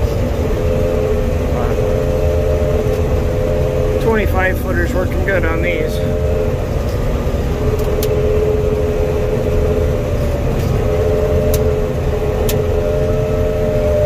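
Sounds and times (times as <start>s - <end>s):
combine harvester rumble and whine: 0.0s - 14.0s.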